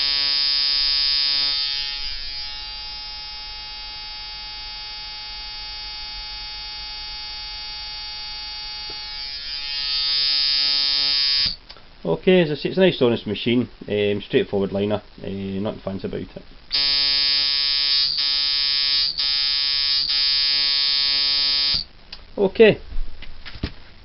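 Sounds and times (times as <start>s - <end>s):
tattoo machine buzzing: 0.0s - 11.6s, 16.7s - 21.9s.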